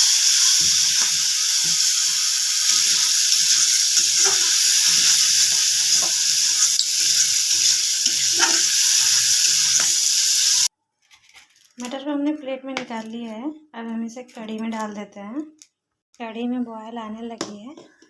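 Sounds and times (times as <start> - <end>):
peas sizzling in hot oil: 0.0 - 10.7
spoon scraping and knocking pan: 0.0 - 10.7.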